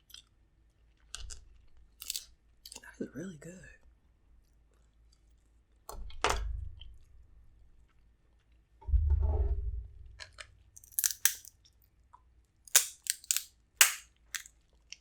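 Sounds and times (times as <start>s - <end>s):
chewing with wet clicks: 0.0s - 0.3s
crunching cracks: 2.0s - 2.8s, 10.8s - 11.5s, 12.7s - 14.5s
low muffled bump: 8.8s - 10.4s.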